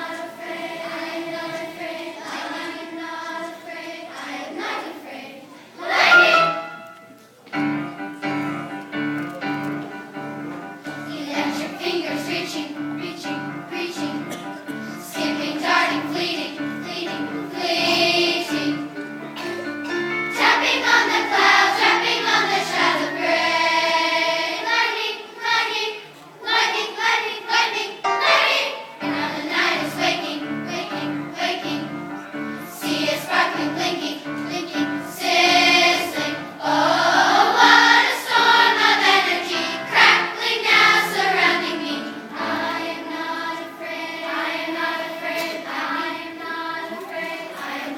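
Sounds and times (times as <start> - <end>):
children's choir singing: 0.0 - 47.9
rhythmic musical accompaniment: 5.9 - 24.9.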